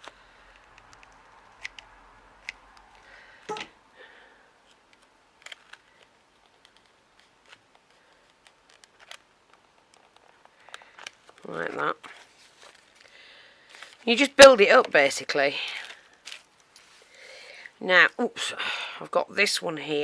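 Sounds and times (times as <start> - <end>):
small pieces clicking and tapping: 4.9 - 11.5.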